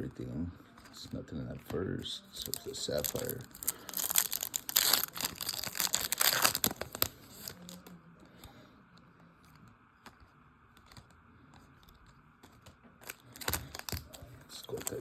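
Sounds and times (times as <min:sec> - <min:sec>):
cards being handled: 0:00.8 - 0:07.9, 0:09.5 - 0:15.0
card pack wrapper tearing: 0:02.4 - 0:07.8, 0:13.0 - 0:15.0.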